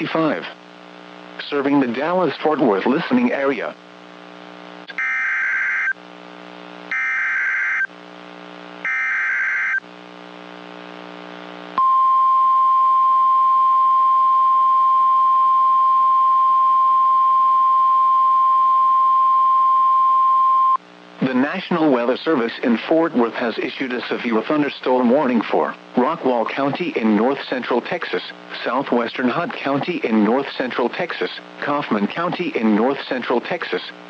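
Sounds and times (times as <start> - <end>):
low buzzing receiver hum: 0.0 - 22.4
loud steady warning alarm tone: 4.9 - 6.0, 6.9 - 7.9, 8.8 - 9.8
screechy digital data bursts: 8.9 - 9.8.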